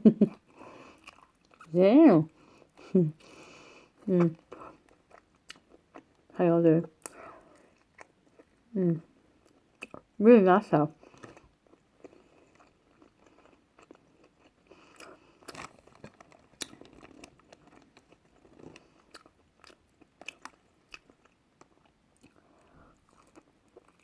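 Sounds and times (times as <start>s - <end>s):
person chewing and biting: 0.9s - 1.7s, 4.2s - 6.1s, 7.8s - 8.5s, 11.1s - 24.0s.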